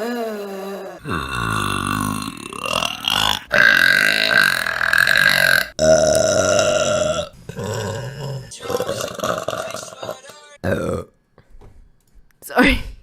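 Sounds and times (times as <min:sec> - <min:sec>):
women burping: 0:00.0 - 0:11.1.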